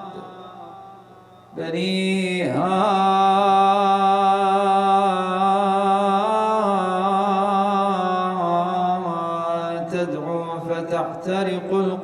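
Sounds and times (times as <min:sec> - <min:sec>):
man chanting a long note: 0:00.0 - 0:01.0.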